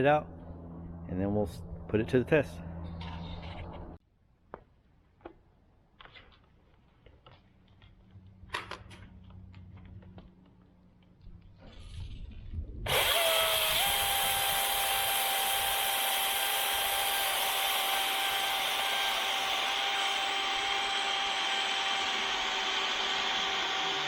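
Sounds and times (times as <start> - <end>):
chainsaw high-pitched whine: 12.9 - 24.0.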